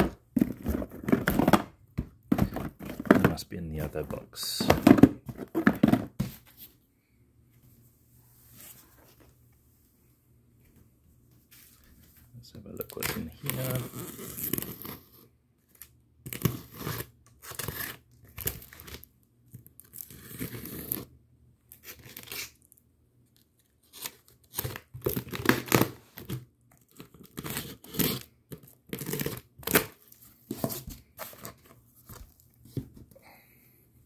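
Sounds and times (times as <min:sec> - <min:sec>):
packaging tearing and crinkling: 0:15.8 - 0:19.1, 0:21.7 - 0:22.8, 0:23.7 - 0:30.1.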